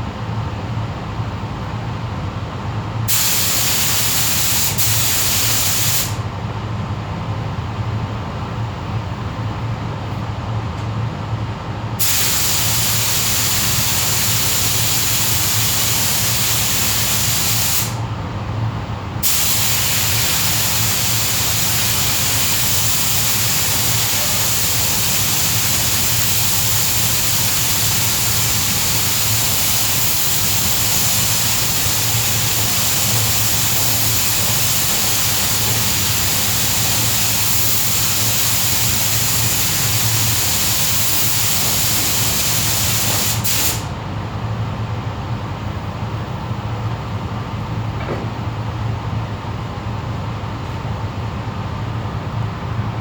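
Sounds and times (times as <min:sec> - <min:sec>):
paint spray gun hissing: 0:03.1 - 0:06.2, 0:12.0 - 0:18.0, 0:19.2 - 0:43.9.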